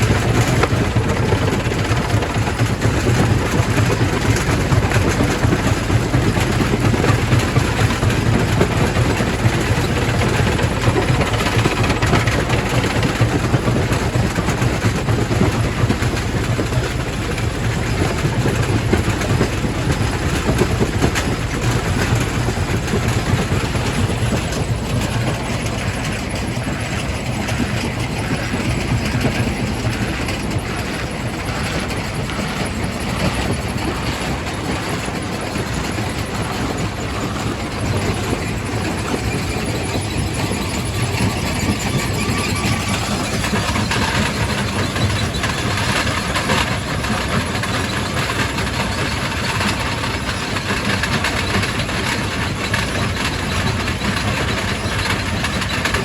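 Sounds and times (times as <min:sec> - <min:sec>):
heavy machine hum: 0:00.0 - 0:56.0
rock rattling through crusher: 0:00.0 - 0:56.0.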